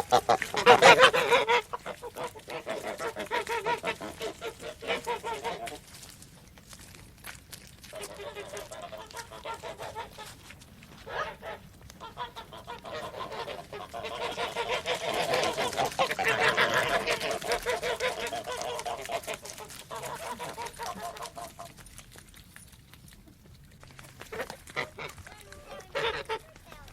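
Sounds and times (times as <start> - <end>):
geese honking: 0.0 - 5.8, 7.9 - 10.4, 11.0 - 21.7, 24.3 - 26.7.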